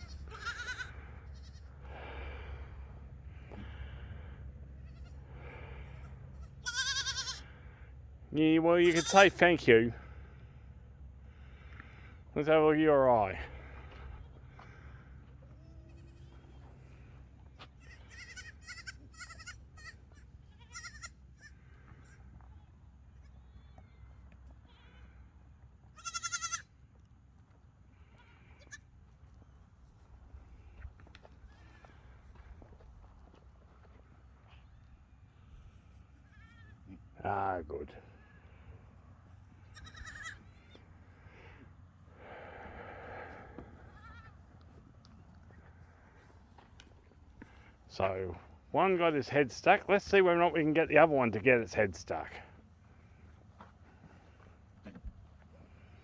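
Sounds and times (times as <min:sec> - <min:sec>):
goats bleating: 0:00.0 - 0:01.8, 0:04.8 - 0:07.6, 0:08.7 - 0:09.5, 0:15.4 - 0:16.7, 0:17.7 - 0:23.8, 0:25.9 - 0:26.7, 0:36.2 - 0:37.0, 0:39.6 - 0:40.8, 0:43.2 - 0:44.4.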